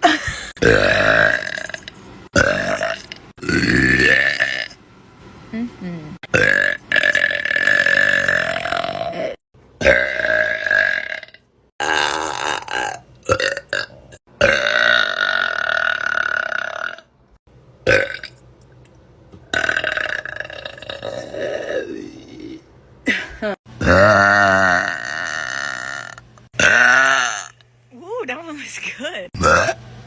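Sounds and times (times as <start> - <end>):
woman burping: 0.0 - 4.7, 6.4 - 17.0, 19.6 - 27.6, 29.4 - 29.8.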